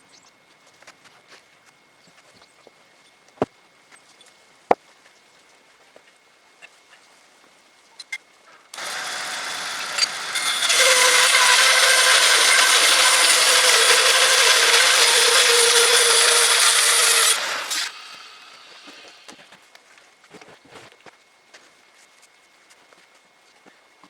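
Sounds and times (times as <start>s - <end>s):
bandsaw mill buzzing whine: 8.7s - 19.6s.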